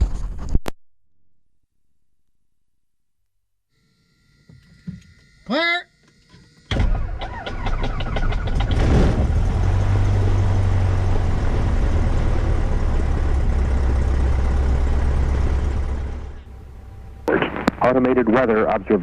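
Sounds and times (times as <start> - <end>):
starter cranking engine: 6.7 - 9.5
aircraft engine running: 9.5 - 19.0.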